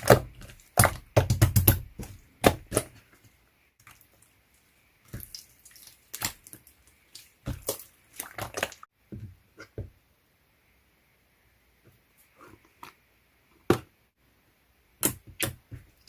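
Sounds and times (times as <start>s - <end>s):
slime squished by hand: 5.1s - 8.8s.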